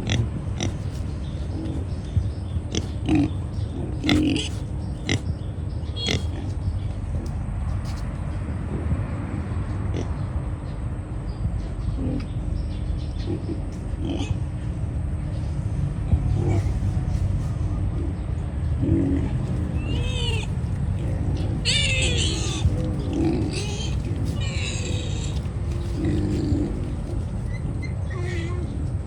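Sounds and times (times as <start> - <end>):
pigs chomping and snuffling: 0.0 - 5.4, 18.8 - 28.4
pigs grunting: 0.0 - 10.3, 11.9 - 12.4, 13.1 - 29.0.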